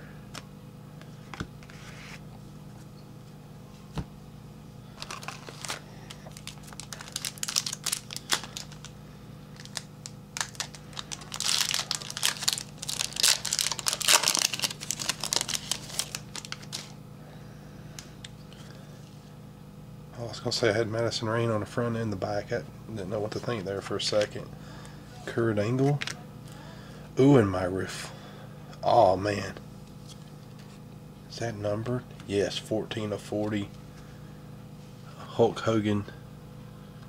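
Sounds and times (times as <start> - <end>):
plastic wrapper crinkling and tearing: 5.0 - 8.9, 9.5 - 17.0.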